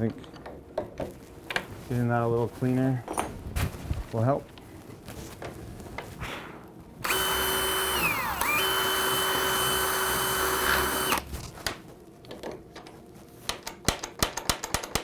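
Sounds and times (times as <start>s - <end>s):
electric drill whining: 7.0s - 11.3s.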